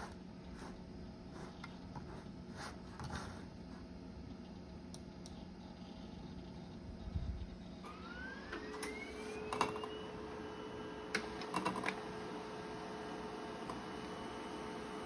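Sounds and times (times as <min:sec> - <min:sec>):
printer motor whine and hum: 0:05.4 - 0:15.0.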